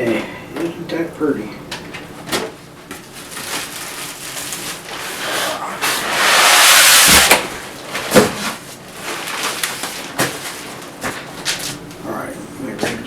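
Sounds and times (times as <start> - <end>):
packaging rustling: 2.9 - 6.0, 7.6 - 11.9.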